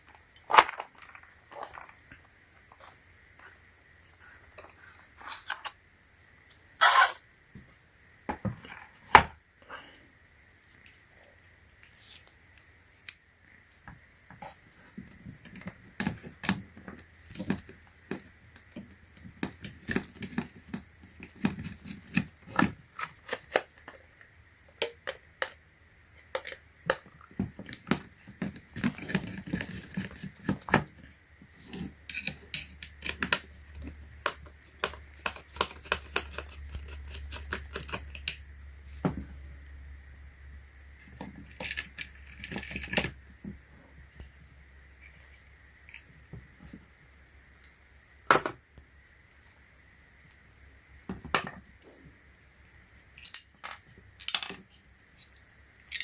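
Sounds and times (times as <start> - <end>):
low steady hum: 0.0 - 56.0
clicks and rattles of plastic parts: 41.2 - 43.2.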